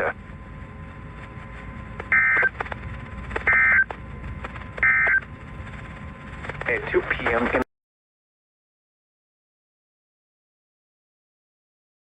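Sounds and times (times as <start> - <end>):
radio reception hiss: 0.0 - 7.7
two-tone digital data bursts: 2.1 - 2.6, 3.5 - 3.9, 4.8 - 5.2.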